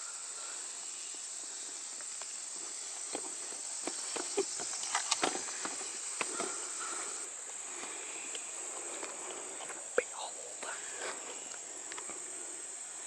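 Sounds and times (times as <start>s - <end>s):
high-pitched insect drone: 0.0s - 13.0s
footsteps on leaves and twigs: 2.0s - 9.8s.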